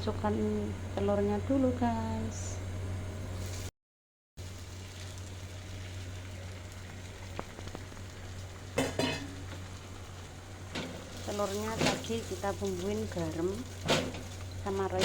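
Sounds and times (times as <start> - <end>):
eggs sizzling in hot oil: 4.4 - 15.0.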